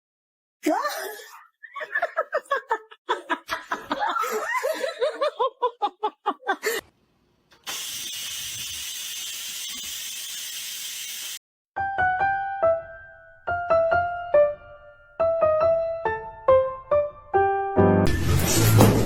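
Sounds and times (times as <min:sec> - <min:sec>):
person laughing: 0:00.6 - 0:06.9
steady hiss: 0:07.5 - 0:11.4.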